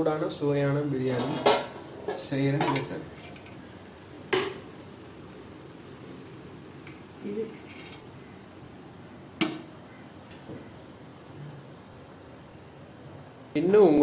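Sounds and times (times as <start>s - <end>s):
metal utensil clinking on pot: 1.0s - 3.6s, 4.3s - 4.7s.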